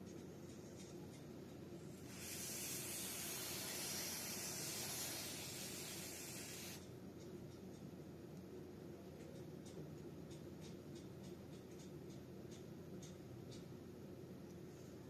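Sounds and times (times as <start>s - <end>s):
aerosol spray hissing: 1.9s - 6.9s.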